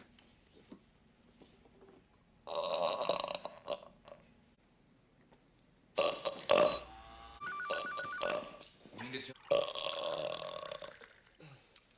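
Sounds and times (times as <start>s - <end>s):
two-tone trill: 6.6s - 8.6s.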